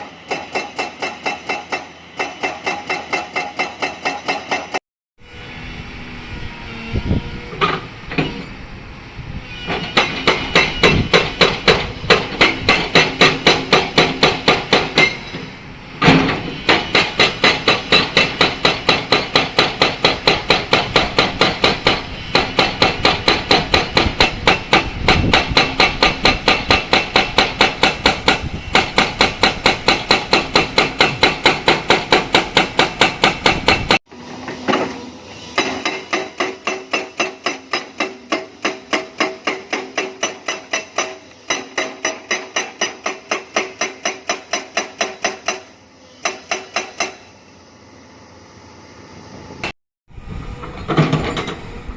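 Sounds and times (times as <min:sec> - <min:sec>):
hydraulic rock breaker hammering: 0:00.0 - 0:04.8, 0:09.7 - 0:15.2, 0:16.0 - 0:35.0, 0:35.6 - 0:47.3.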